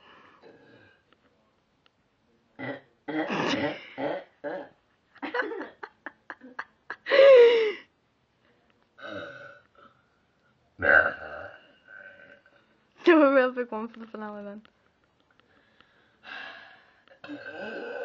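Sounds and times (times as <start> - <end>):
girl burping: 2.6 - 4.8, 17.2 - 18.0.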